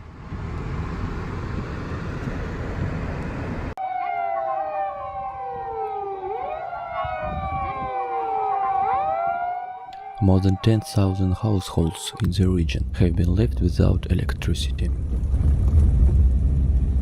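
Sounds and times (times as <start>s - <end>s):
emergency vehicle sirens wailing: 3.8s - 12.2s.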